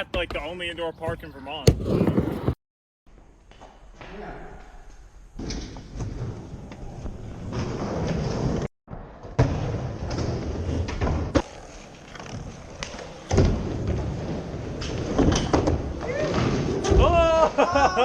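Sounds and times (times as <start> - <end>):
skateboard wheels rolling: 0.0 - 2.6, 5.4 - 8.7, 9.3 - 17.0
skateboard hitting the surface: 1.1 - 2.6.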